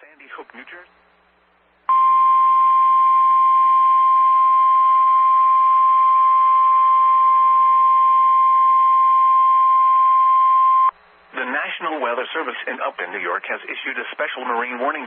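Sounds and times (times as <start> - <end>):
steady alarm tone: 1.9 - 10.9.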